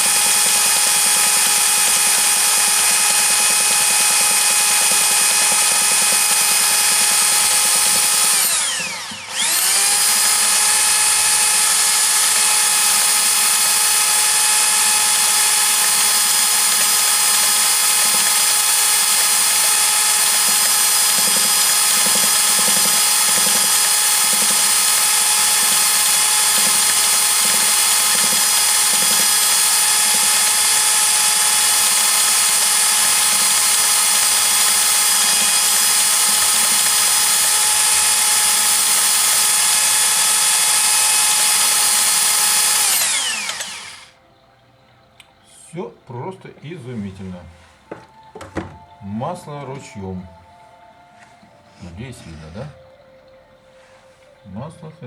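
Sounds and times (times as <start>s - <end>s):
cordless drill running: 0.0s - 44.2s.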